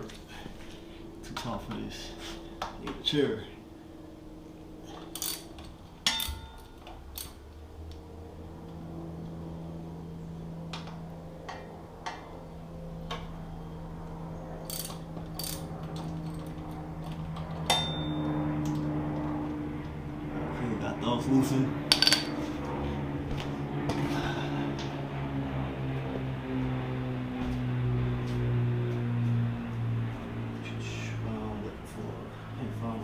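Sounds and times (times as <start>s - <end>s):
steady low hum: 0.0s - 33.0s
hand ratchet clicking: 5.1s - 5.5s, 14.7s - 15.7s.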